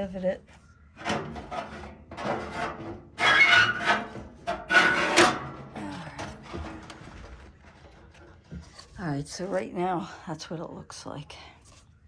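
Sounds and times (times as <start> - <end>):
sheet metal scraping: 0.9 - 8.9.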